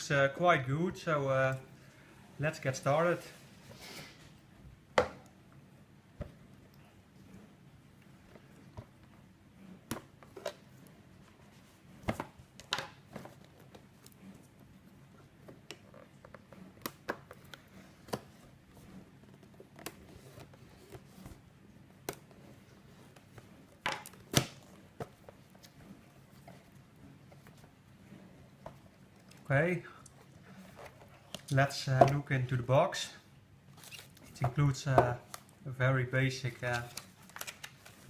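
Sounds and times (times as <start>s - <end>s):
packaging clicks and rustles: 36.4s - 38.0s
packaging snaps: 36.6s - 38.0s.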